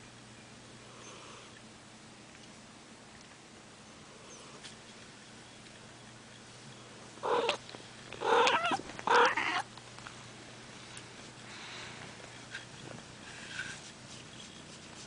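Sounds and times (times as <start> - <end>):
faint steady sound: 0.0 - 15.0
cat calling: 7.2 - 7.6, 8.2 - 9.7.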